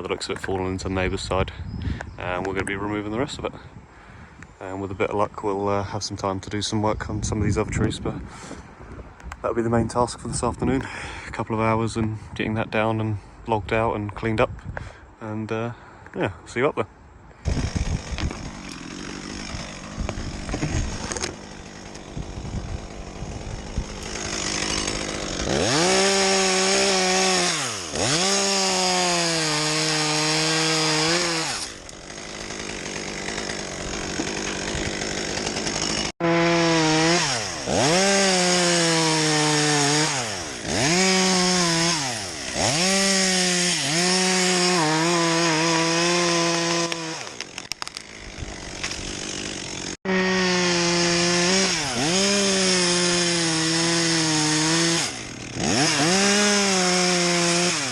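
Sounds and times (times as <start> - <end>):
chainsaw cutting wood: 17.4 - 57.9.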